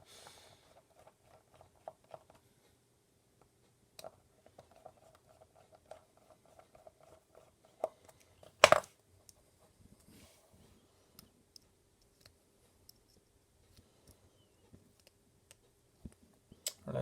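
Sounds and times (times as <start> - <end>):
screwdriver light ticks and scratches: 11.2 - 14.2, 14.9 - 15.8.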